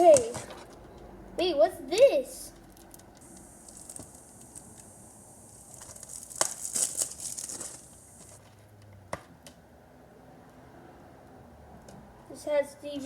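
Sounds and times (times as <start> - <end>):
sharp clicks: 2.0 - 8.4
packaging crinkling and rustling: 2.8 - 8.6.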